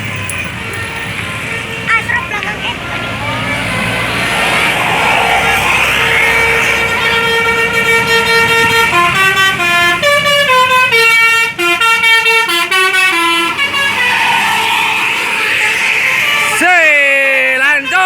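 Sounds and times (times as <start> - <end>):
musical bus horn playing a tune: 6.2 - 14.6.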